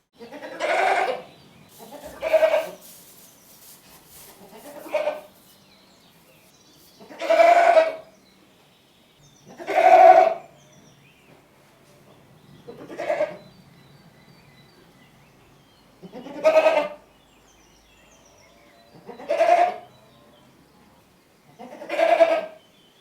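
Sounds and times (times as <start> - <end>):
goat bleating: 0.2 - 2.8, 4.4 - 5.3, 7.1 - 8.0, 9.6 - 10.4, 12.8 - 13.4, 16.1 - 17.0, 19.0 - 19.8, 21.6 - 22.6.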